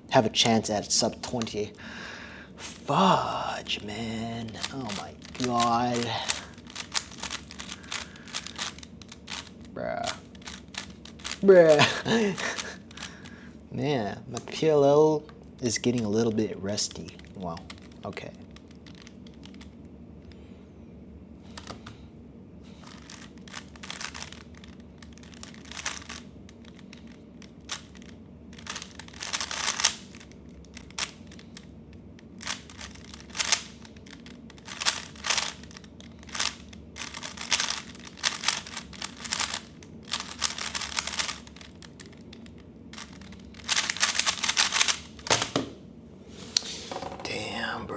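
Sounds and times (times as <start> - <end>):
puzzle cube clicking: 0.4 - 1.6, 3.9 - 13.4, 15.6 - 19.8, 22.8 - 45.7.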